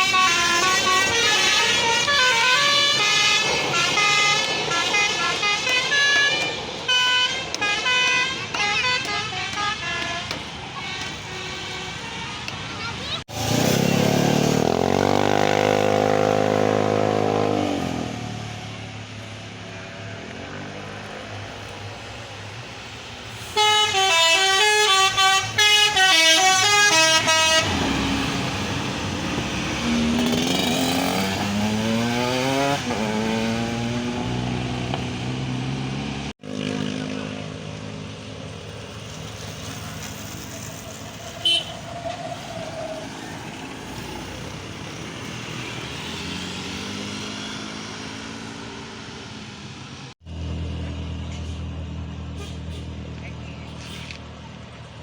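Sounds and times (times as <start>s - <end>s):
deep bus horn: 0.0s - 12.5s, 23.4s - 28.7s, 41.4s - 41.8s, 52.3s - 53.0s
bus horn tune: 0.0s - 12.7s, 23.4s - 28.6s, 41.4s - 41.8s, 52.3s - 53.0s
traffic: 0.0s - 55.0s.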